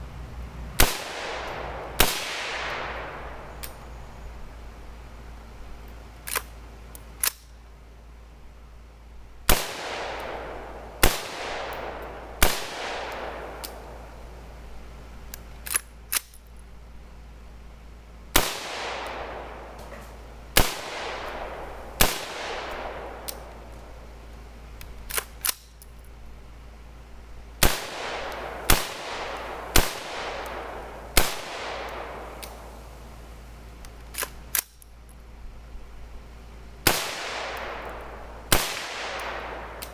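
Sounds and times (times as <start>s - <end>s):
sharp clicks: 0.8s - 3.9s, 5.8s - 7.6s, 11.4s - 14.0s, 18.4s - 26.1s, 27.7s - 32.7s, 33.8s - 35.3s
rifle shots with echo: 0.8s - 4.0s, 9.5s - 14.4s, 18.4s - 24.2s, 27.6s - 33.0s, 36.8s - 39.9s.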